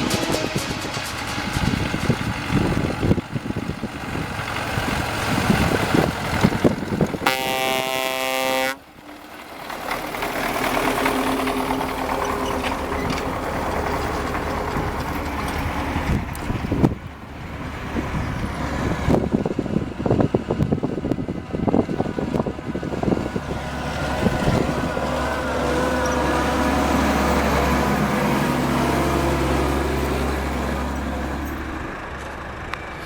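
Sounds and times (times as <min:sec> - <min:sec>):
farm machinery rattling and knocking: 0:00.0 - 0:07.4, 0:08.8 - 0:33.0
vehicle horn: 0:07.2 - 0:08.8.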